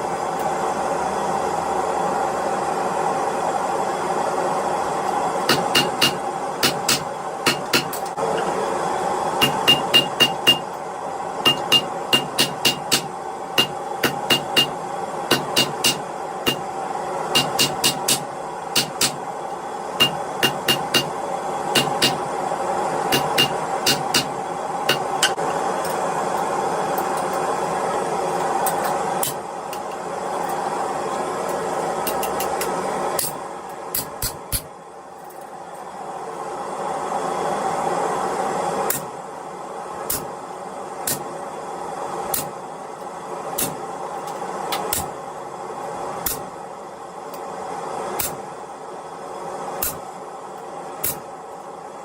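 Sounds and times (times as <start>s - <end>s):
whooshing hum: 0.0s - 52.0s
hammer striking iron on anvil: 5.4s - 8.1s, 9.4s - 10.8s, 11.4s - 16.7s, 17.4s - 19.2s, 20.0s - 22.2s, 23.1s - 25.4s, 32.1s - 34.7s.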